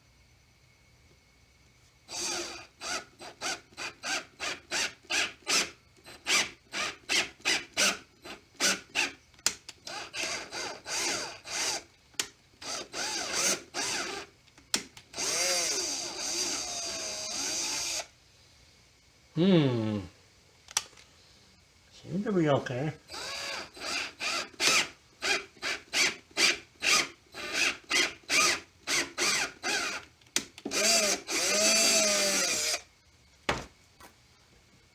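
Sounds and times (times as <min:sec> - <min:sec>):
electric drill motor: 0:02.1 - 0:09.2, 0:09.8 - 0:12.0, 0:12.6 - 0:14.3, 0:15.1 - 0:18.1, 0:23.1 - 0:32.9.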